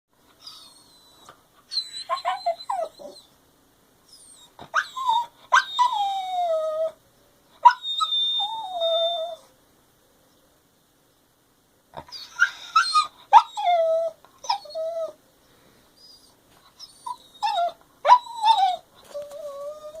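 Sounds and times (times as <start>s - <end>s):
dog whining: 0.4s - 3.3s, 4.1s - 7.0s, 7.6s - 9.5s, 12.0s - 15.2s, 16.0s - 20.0s.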